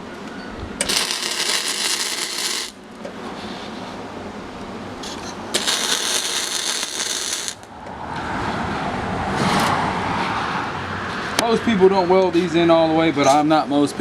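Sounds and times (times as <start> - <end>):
welding arc crackling and hissing: 0.8 - 2.9, 5.5 - 7.7.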